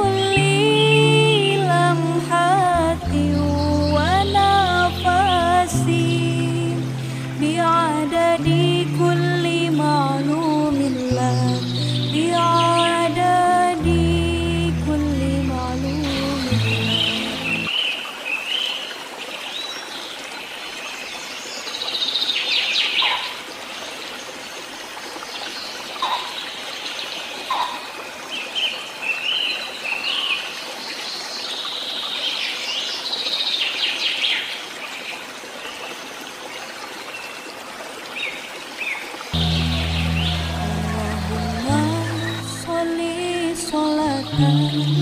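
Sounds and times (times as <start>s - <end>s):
flowing water: 0.0s - 45.0s
birds chirping: 9.6s - 13.8s, 14.7s - 17.8s, 39.4s - 45.0s.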